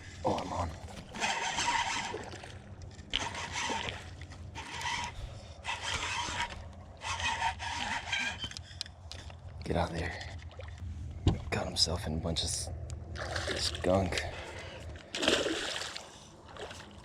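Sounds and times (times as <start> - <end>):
fishing reel whirring: 1.1 - 2.4, 3.1 - 9.0.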